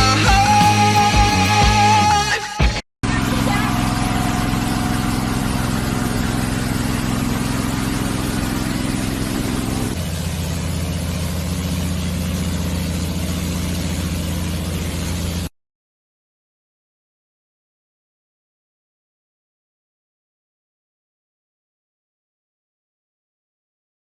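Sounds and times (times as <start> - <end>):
engine running: 3.0 - 15.5.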